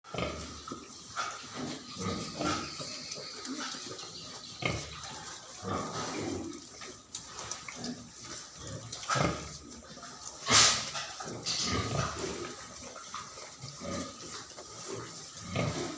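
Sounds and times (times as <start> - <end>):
pigs grunting: 0.1 - 15.9
sharp loud pig noise: 10.4 - 12.3.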